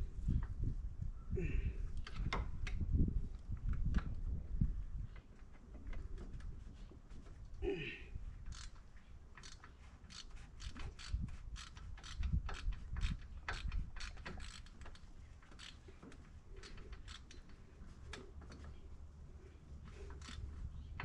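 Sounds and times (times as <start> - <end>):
ratchet wrench clicking: 8.5 - 8.8, 9.4 - 15.8, 16.6 - 17.4, 20.2 - 20.4.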